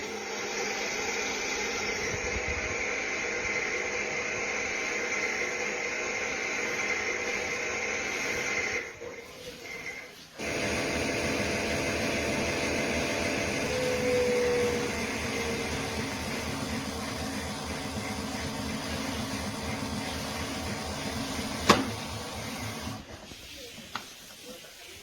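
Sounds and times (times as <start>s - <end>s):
toy washing machine whirring: 0.0s - 24.4s.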